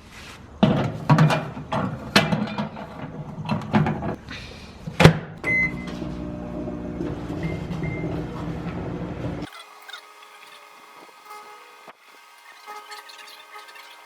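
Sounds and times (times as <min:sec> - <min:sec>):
microwave oven humming: 0:05.4 - 0:14.0.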